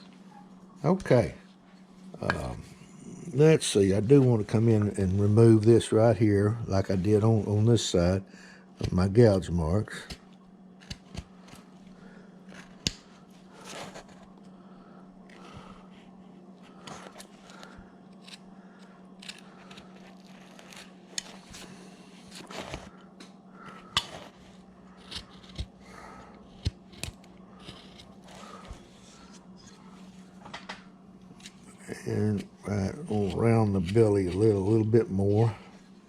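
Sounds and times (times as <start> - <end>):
steady low hum: 0.0 - 36.0
blade carving wood: 10.8 - 11.7, 16.8 - 22.9, 23.7 - 29.8, 31.4 - 35.5.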